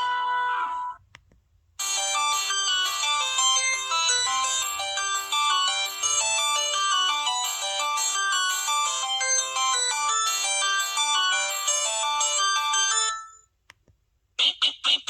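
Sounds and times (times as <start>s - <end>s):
electronic phone ringtone melody: 1.8s - 13.5s.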